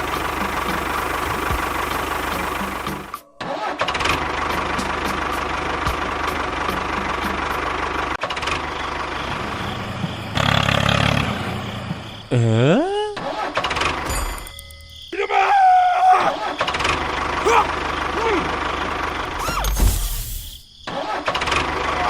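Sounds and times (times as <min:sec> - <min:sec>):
engine humming: 0:00.0 - 0:12.4, 0:16.0 - 0:20.7.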